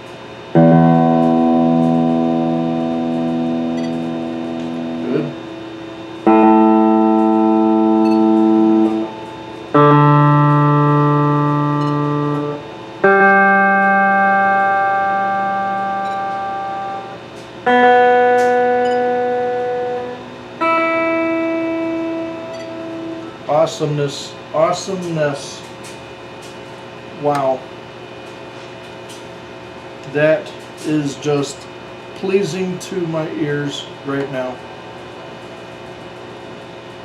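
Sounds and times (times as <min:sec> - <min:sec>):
electric guitar strings plucked: 0:00.5 - 0:23.9.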